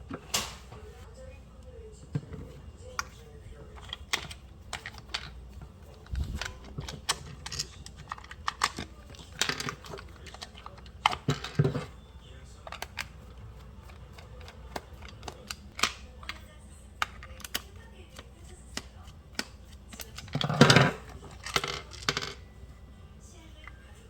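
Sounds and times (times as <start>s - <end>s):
small parts and tools clinking: 3.0s - 12.0s, 12.6s - 22.4s
clattering scrape: 20.0s - 22.4s.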